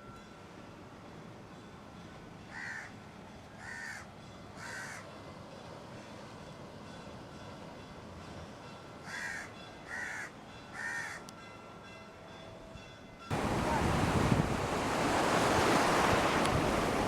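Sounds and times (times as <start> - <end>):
crow cawing: 2.5 - 2.9, 3.6 - 4.0, 4.6 - 5.0, 9.1 - 11.2.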